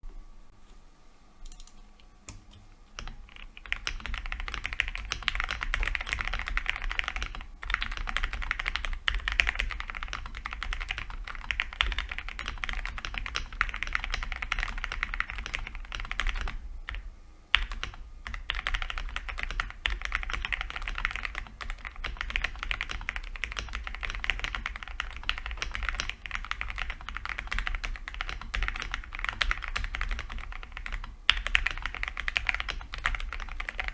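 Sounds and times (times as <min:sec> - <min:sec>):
fast typing on mechanical keyboard: 0:02.9 - 0:33.9.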